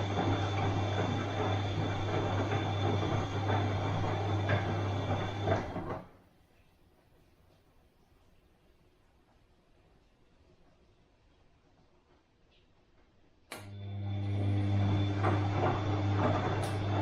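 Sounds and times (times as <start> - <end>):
washing machine humming: 0.0 - 6.3, 13.6 - 17.0.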